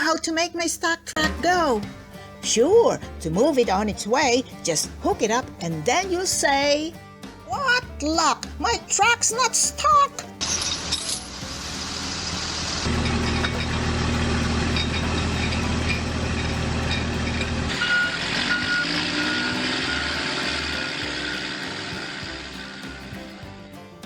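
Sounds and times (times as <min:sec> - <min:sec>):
truck engine running: 0:11.5 - 0:23.4
reversing beeper: 0:17.7 - 0:21.0.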